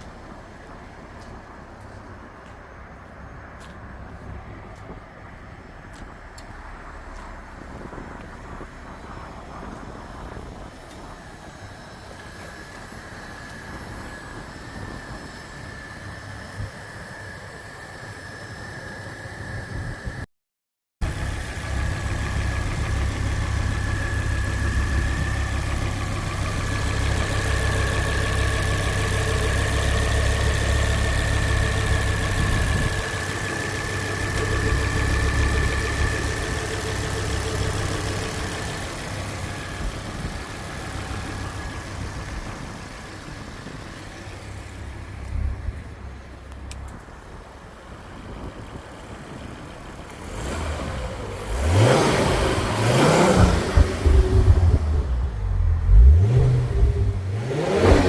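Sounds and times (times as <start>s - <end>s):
car engine humming with whine: 0.0s - 20.3s, 21.0s - 58.0s.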